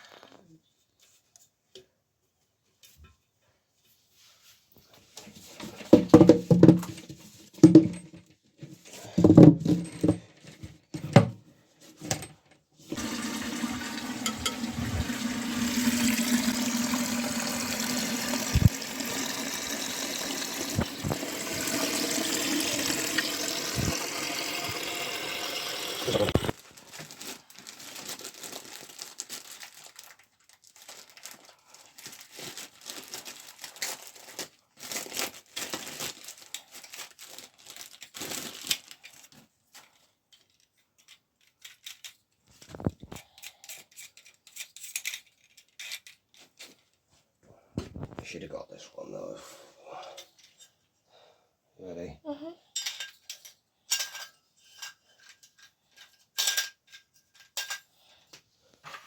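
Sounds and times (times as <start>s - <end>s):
toilet flushing: 12.9s - 26.5s.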